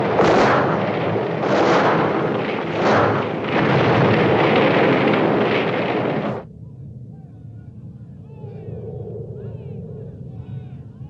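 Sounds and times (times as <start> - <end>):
loud rushing fire blast: 0.0 - 6.5.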